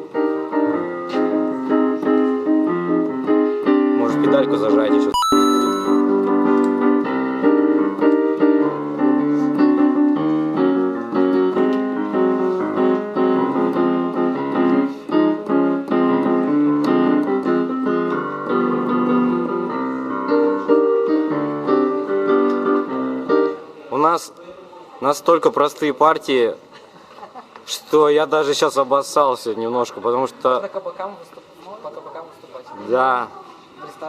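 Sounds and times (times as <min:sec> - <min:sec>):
electric keyboard playing chords: 0:05.2 - 0:09.2.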